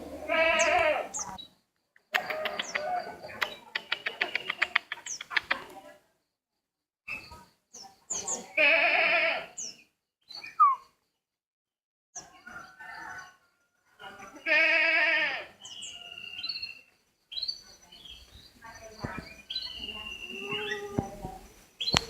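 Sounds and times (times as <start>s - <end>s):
bird bleating call: 0.1s - 1.2s, 8.5s - 9.6s, 14.4s - 15.6s, 19.8s - 21.2s
whistled bird chirps: 10.2s - 11.0s, 15.6s - 20.9s.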